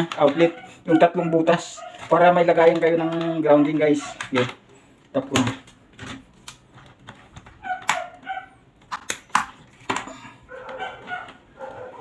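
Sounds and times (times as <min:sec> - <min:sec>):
dog whining: 0:07.6 - 0:08.6, 0:10.5 - 0:12.0.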